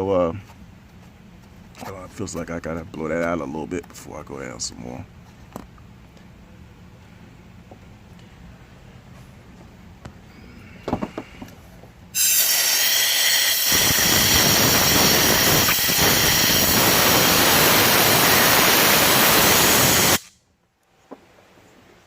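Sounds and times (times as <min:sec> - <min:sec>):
compressed air blow gun hissing: 0:12.2 - 0:20.4.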